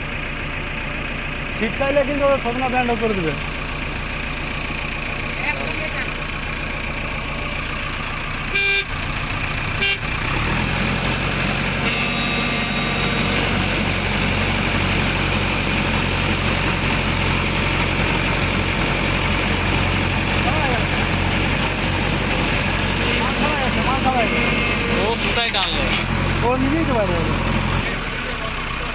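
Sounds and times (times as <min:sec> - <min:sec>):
heavy machinery engine running: 0:00.0 - 0:28.9
short horn toots: 0:08.5 - 0:09.0, 0:09.8 - 0:10.2, 0:11.8 - 0:13.9, 0:23.0 - 0:26.0.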